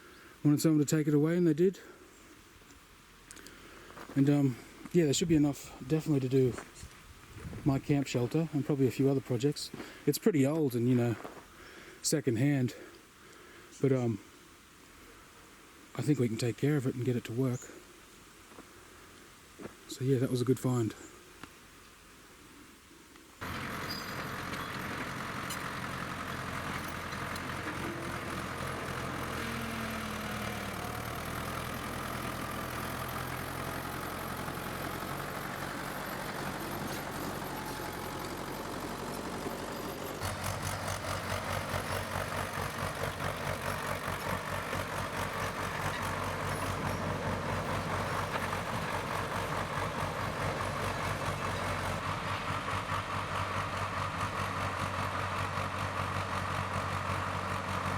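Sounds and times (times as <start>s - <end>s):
diesel bulldozer engine running: 23.4s - 57.9s.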